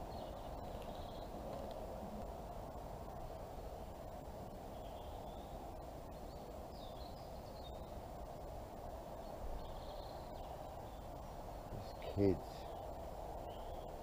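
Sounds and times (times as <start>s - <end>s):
night-time neighbourhood hum: 0.0s - 14.0s.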